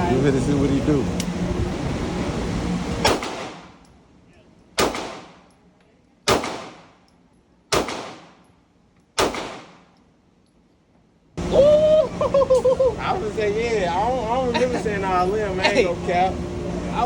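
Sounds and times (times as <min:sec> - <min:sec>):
pistol shots echoing: 0:03.0 - 0:03.8, 0:04.8 - 0:05.5, 0:06.2 - 0:07.0, 0:07.7 - 0:08.5, 0:09.2 - 0:09.9.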